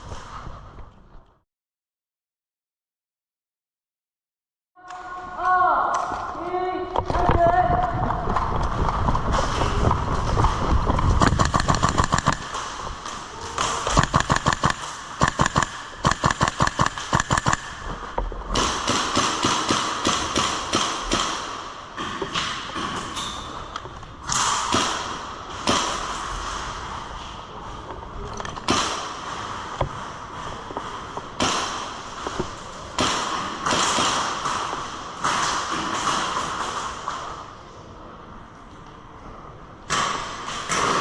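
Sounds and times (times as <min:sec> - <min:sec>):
airsoft guns firing bursts: 0:11.2 - 0:12.9, 0:13.6 - 0:17.9, 0:18.6 - 0:21.6.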